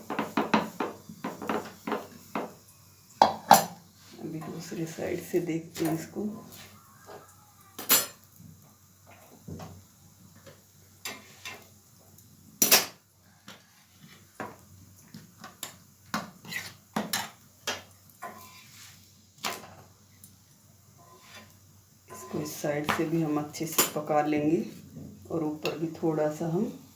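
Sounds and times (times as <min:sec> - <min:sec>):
metal spatula clinking on griddle: 0:07.8 - 0:08.2.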